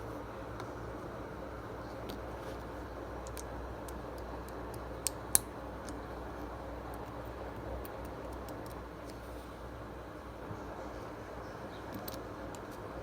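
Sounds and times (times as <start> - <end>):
low background hum: 0.0 - 13.0.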